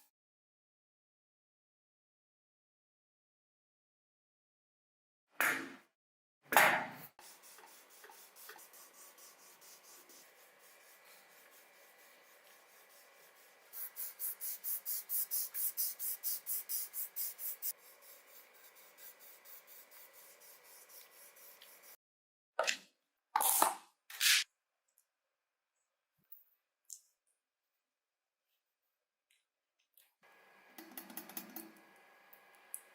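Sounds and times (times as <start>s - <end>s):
scrubbing strokes: 7.2s - 22.0s.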